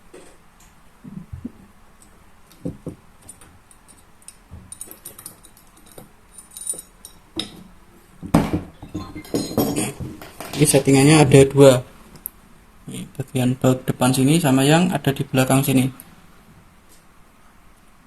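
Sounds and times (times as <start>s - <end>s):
small metal parts clicking: 2.0s - 7.6s.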